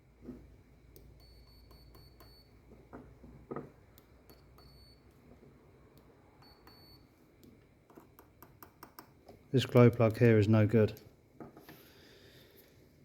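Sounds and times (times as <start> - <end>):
probe tips clicking on terminals: 0.9 - 5.3, 5.9 - 11.1
multimeter beeps: 1.0 - 2.8, 4.0 - 5.2, 6.4 - 7.2.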